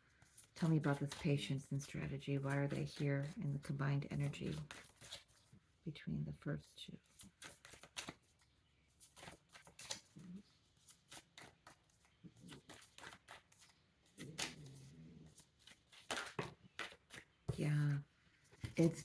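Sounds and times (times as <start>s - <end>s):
cards being shuffled: 0.2s - 5.5s, 7.0s - 17.7s.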